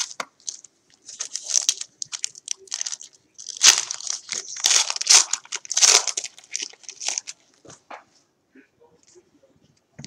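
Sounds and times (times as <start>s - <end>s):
plastic wrappers crinkling: 0.0s - 7.6s.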